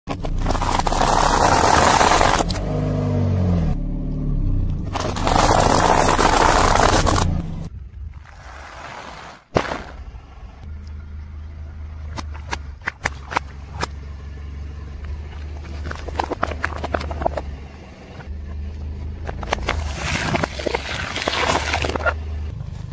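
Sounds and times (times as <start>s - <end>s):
car engine: 0.0s - 8.9s, 9.6s - 22.9s
tyres crushing objects: 0.1s - 2.6s, 4.9s - 7.5s, 8.8s - 10.2s, 15.3s - 17.5s.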